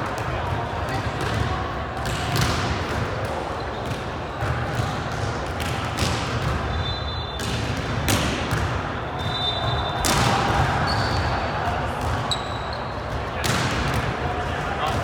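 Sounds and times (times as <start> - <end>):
crowd chatter: 0.0 - 15.0
volleyball smacks: 10.0 - 10.7.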